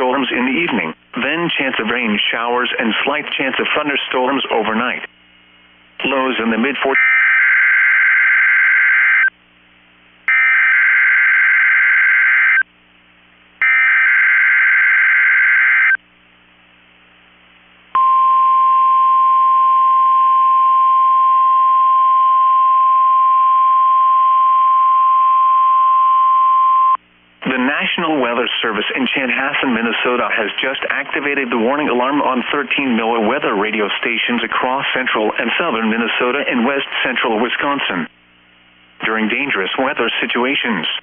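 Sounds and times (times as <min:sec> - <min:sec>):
steady warning alarm tone: 0:07.0 - 0:09.3, 0:10.3 - 0:12.6, 0:13.6 - 0:16.0.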